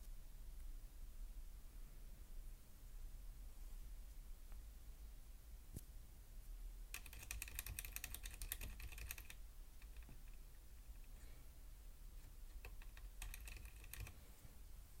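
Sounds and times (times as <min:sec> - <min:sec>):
mechanical keyboard typing: 0:06.9 - 0:10.4, 0:12.5 - 0:14.2.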